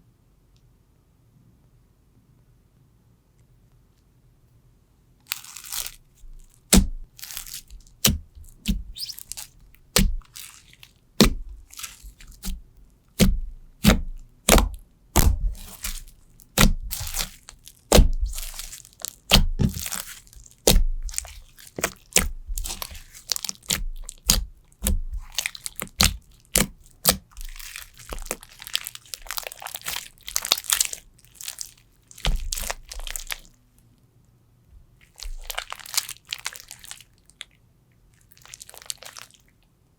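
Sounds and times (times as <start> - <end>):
slime squeezed clicking pops: 8.0 - 10.3.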